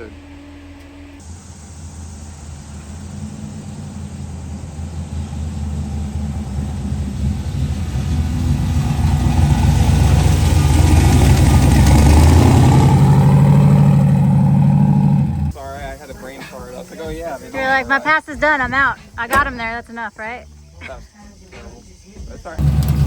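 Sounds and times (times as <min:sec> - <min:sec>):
car engine accelerating: 0:00.0 - 0:20.7, 0:22.5 - 0:23.0.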